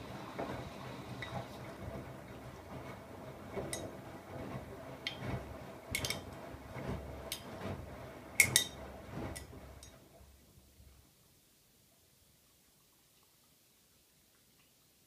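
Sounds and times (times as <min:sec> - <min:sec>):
washing machine drum swishing: 0:00.0 - 0:10.4.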